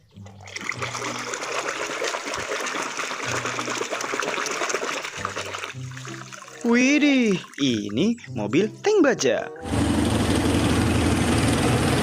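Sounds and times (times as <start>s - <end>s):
water splashing and trickling: 0.0s - 9.2s.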